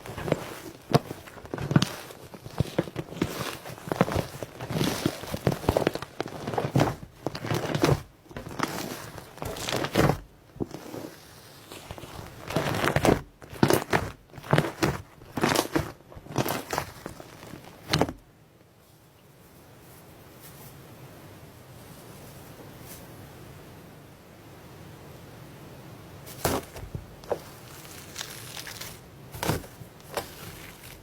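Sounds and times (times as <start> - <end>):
slime crust crackling and crunching: 0.0 - 18.3, 26.3 - 31.0.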